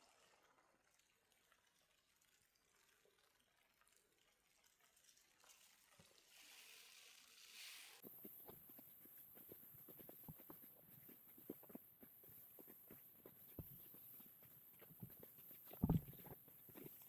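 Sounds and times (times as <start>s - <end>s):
faint steady hiss: 5.5s - 17.0s.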